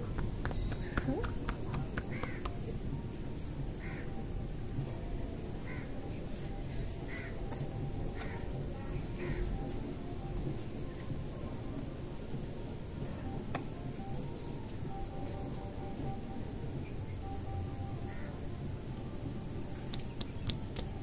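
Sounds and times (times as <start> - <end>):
steady low rumble: 0.0 - 21.0
bird harsh calls: 0.4 - 4.4, 5.6 - 6.2, 6.8 - 9.7, 16.8 - 18.6.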